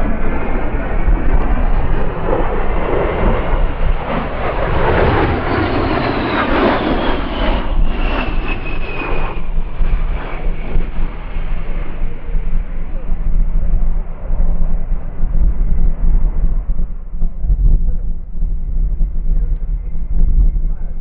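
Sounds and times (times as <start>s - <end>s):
high turbine whine: 0.0s - 21.0s
jet passing with rushing roar: 0.0s - 21.0s.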